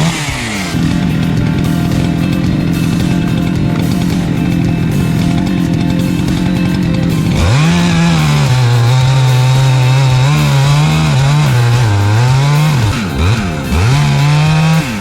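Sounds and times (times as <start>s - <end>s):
chainsaw cutting wood: 0.0s - 15.0s.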